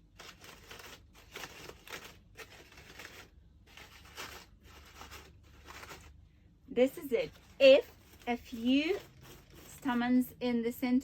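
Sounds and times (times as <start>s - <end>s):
paper rustling and crinkling: 0.0s - 6.2s, 7.0s - 10.0s.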